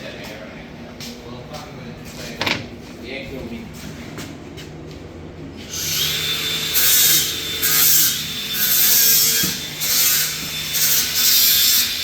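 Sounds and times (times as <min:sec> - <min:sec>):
tool rasping back and forth: 0:05.7 - 0:12.0.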